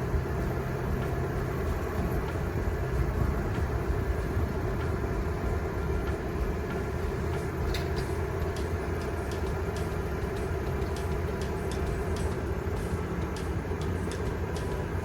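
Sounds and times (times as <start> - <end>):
truck engine and road drone: 0.0 - 15.0.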